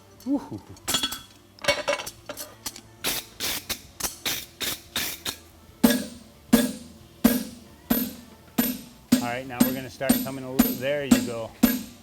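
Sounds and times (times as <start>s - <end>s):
hammer striking steel on anvil: 5.8s - 12.0s.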